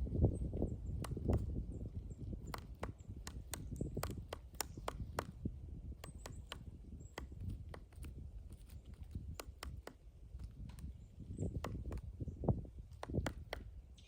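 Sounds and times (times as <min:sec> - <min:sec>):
woodpecker knocking on wood: 0:00.9 - 0:13.8.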